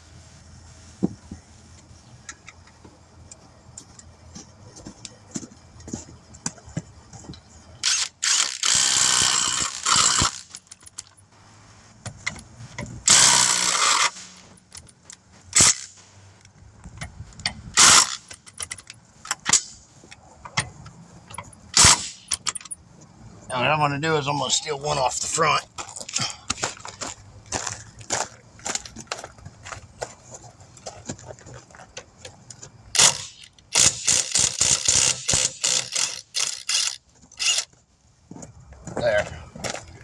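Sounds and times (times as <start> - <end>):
metal tools clinking: 7.1 - 11.3, 20.4 - 22.8
impact wrench bursts: 7.8 - 11.0, 13.0 - 14.9, 15.6 - 16.0, 17.8 - 18.8, 21.7 - 22.8, 33.0 - 37.7.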